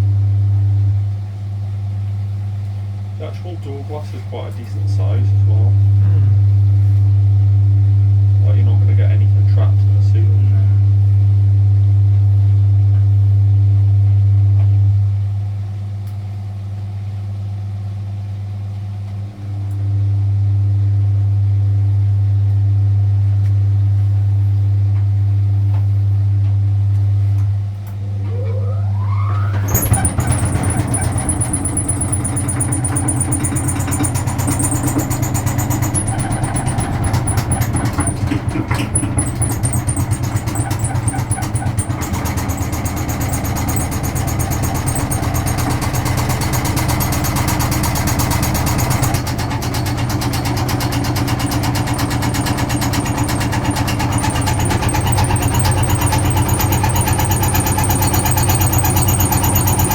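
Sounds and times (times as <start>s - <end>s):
washing machine motor hum: 21.4s - 59.9s
washing machine rattling: 28.3s - 59.9s.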